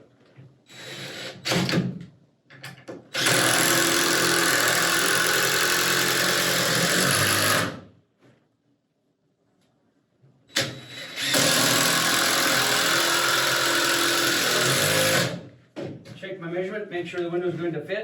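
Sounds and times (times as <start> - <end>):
cordless drill driving a screw: 3.1 - 7.8, 10.5 - 15.4.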